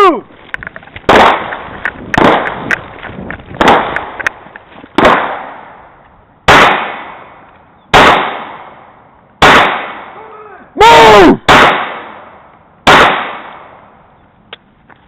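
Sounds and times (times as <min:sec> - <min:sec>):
handgun shots echoing: 0:02.2 - 0:02.8, 0:12.9 - 0:13.7.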